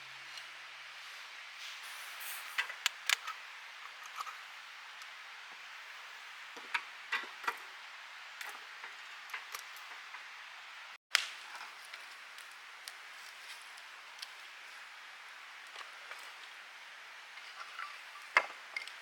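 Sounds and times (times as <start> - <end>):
campfire crackling and popping: 2.1 - 3.4, 11.1 - 11.6.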